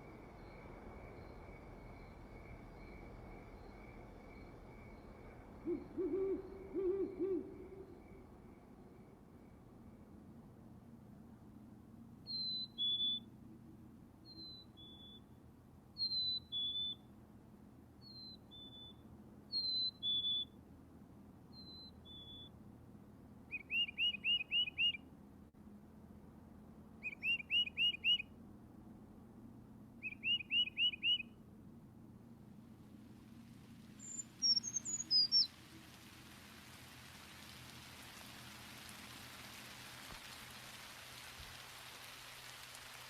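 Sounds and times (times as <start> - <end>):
bird rising chirps: 34.0 - 35.6.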